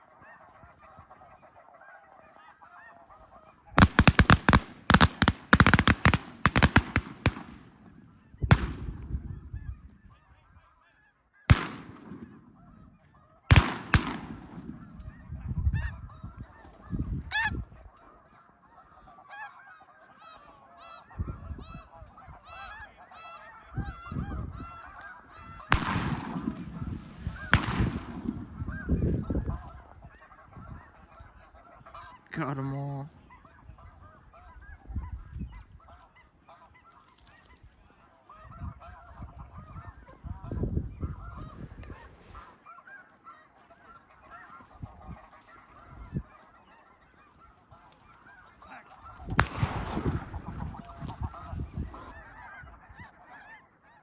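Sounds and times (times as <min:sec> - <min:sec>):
geese calling: 0:00.0 - 0:54.0
shotgun shots: 0:03.8 - 0:09.1, 0:11.5 - 0:12.6, 0:13.5 - 0:15.0, 0:25.7 - 0:28.6, 0:49.3 - 0:51.2.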